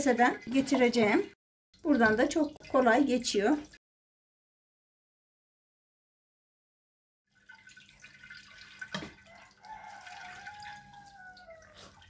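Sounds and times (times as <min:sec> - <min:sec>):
liquid trickling and dripping: 0:00.0 - 0:03.8, 0:07.3 - 0:12.0.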